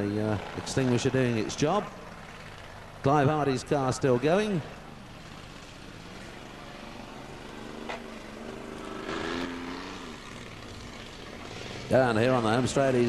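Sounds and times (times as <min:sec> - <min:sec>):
car engines running: 0:00.0 - 0:13.0
engine revving: 0:06.0 - 0:13.0.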